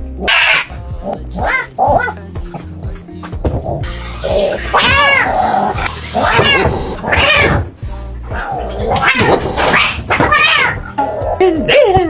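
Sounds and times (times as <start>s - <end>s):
background music: 0.0s - 12.0s
cat meowing: 4.6s - 7.8s, 8.4s - 11.0s.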